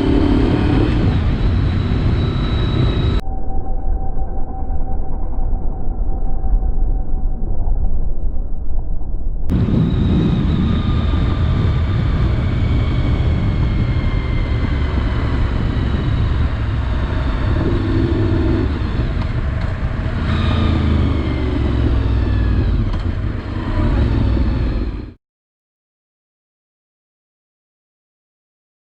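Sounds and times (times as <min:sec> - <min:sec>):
motorcycle engine running: 0:00.0 - 0:03.2, 0:09.5 - 0:25.2
wind rumble on microphone: 0:00.0 - 0:25.2.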